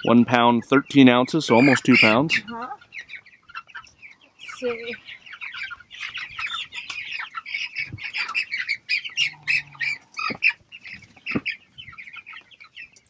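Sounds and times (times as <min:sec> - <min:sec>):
chicks peeping: 0:00.0 - 0:13.0.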